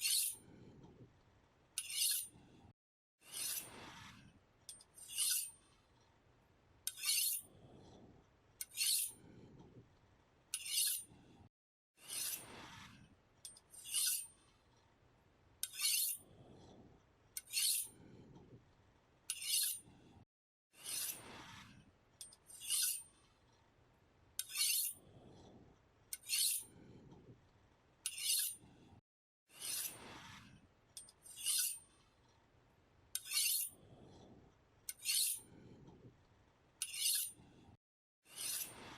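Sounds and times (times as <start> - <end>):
knife scraping on sharpener: 0.0 - 0.4, 1.8 - 2.3, 3.2 - 3.8, 4.7 - 5.6, 6.9 - 7.5, 8.6 - 9.2, 10.5 - 11.1, 12.0 - 12.5, 13.5 - 14.3, 15.6 - 16.2, 17.4 - 18.0, 19.3 - 19.8, 20.8 - 21.3, 22.2 - 23.1, 24.4 - 25.0, 26.1 - 26.7, 28.0 - 28.6, 29.5 - 30.2, 31.0 - 31.8, 33.2 - 33.8, 34.9 - 35.5, 36.8 - 37.4, 38.3 - 38.9.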